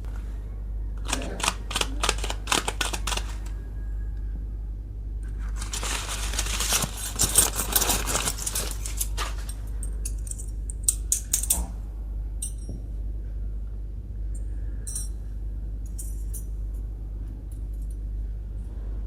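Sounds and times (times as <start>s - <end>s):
plastic packaging crinkling and tearing: 5.3s - 9.5s.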